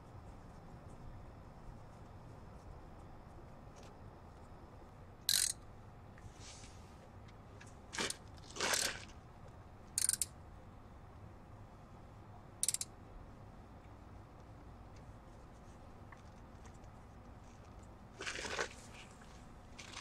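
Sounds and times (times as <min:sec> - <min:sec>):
ratchet wrench clicking: 0:05.3 - 0:05.6, 0:10.0 - 0:10.3, 0:12.6 - 0:12.9.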